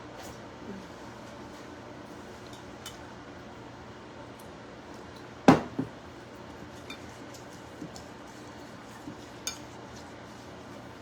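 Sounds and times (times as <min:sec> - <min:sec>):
kitchen item knocking on counter: 0:05.5 - 0:05.9.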